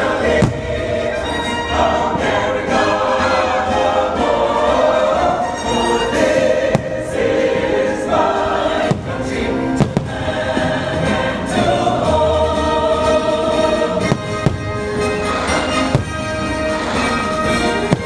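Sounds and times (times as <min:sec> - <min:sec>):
choir singing with musical backing: 0:00.0 - 0:18.0
firework bangs: 0:00.2 - 0:02.9, 0:06.1 - 0:11.2, 0:14.0 - 0:18.0.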